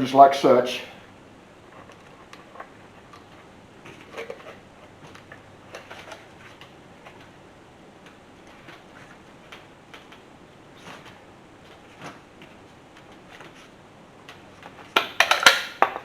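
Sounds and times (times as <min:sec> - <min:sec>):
metal parts clicking and knocking: 0:15.0 - 0:16.0.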